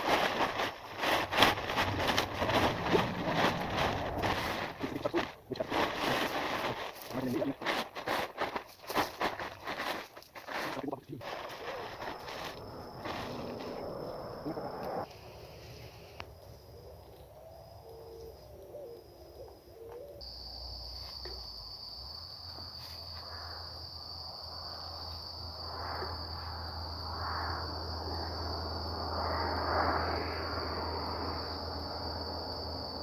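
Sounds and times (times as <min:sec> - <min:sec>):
soft rushing noise: 0:01.1 - 0:05.1
insect trilling: 0:10.6 - 0:15.1.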